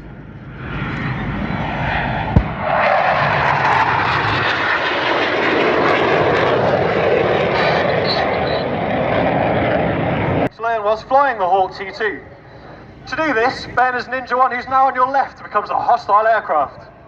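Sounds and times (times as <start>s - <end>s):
jet aircraft passing: 0.0s - 17.0s.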